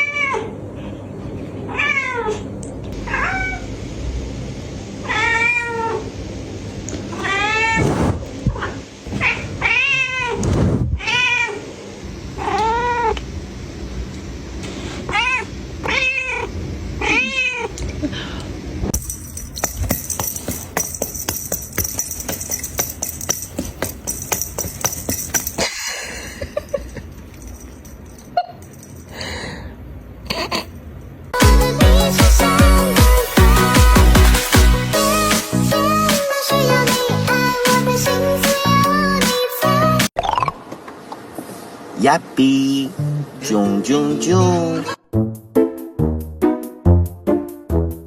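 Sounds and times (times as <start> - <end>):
cat meowing: 3.1 - 3.7, 5.1 - 6.0, 7.1 - 7.9, 8.6 - 11.6, 12.4 - 13.2, 15.1 - 17.8.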